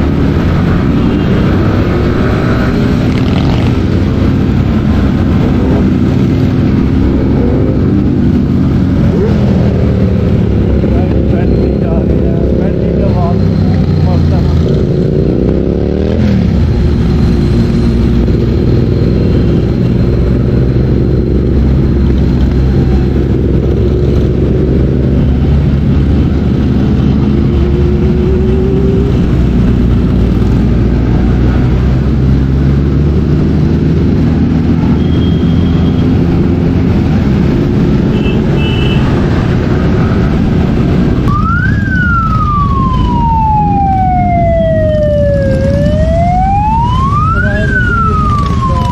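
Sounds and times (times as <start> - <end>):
road noise: 0.0 - 48.9
siren wailing: 39.8 - 48.9.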